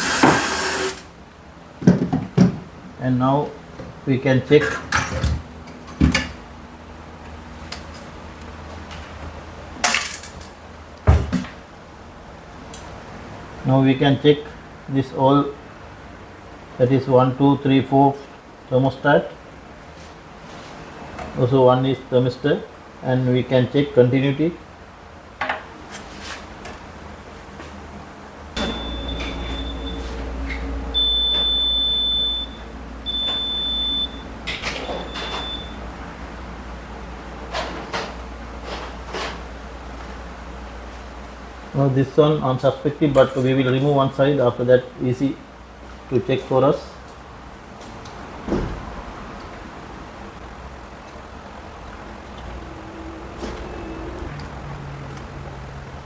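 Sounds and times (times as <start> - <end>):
multimeter continuity beeps: 28.6 - 35.8
faint low hum: 50.5 - 56.0.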